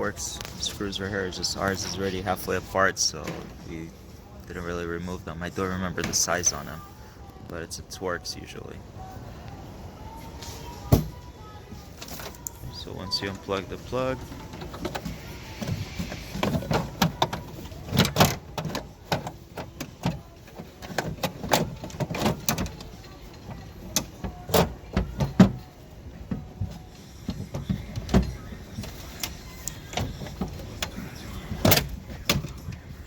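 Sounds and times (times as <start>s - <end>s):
door lock parts clicking and rattling: 16.3s - 25.6s.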